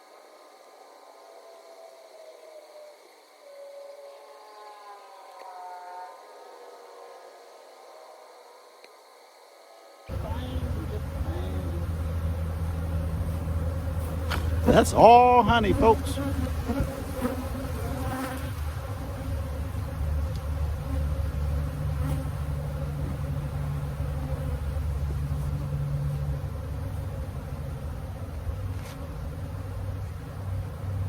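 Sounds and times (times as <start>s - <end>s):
honeybees buzzing: 10.0s - 31.0s.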